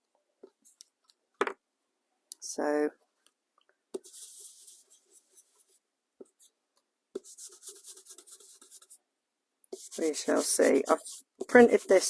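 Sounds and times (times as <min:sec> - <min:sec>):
scratching strokes on cardstock: 0:04.0 - 0:05.8, 0:07.2 - 0:09.0, 0:09.7 - 0:12.0.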